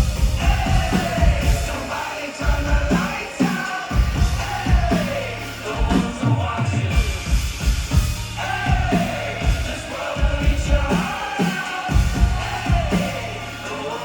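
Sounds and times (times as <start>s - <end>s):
steady bass: 0.0s - 3.3s, 3.9s - 14.0s.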